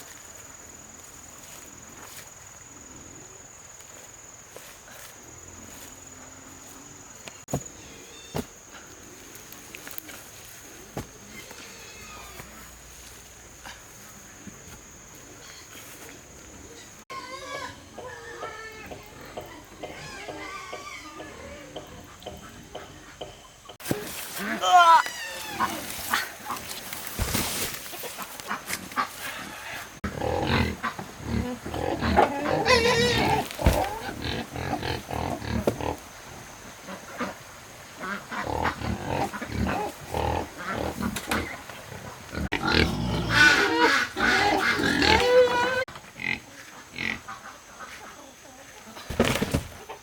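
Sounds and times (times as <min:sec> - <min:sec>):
farm animals calling: 0:24.3 - 0:26.8, 0:27.9 - 0:36.0, 0:38.0 - 0:49.2.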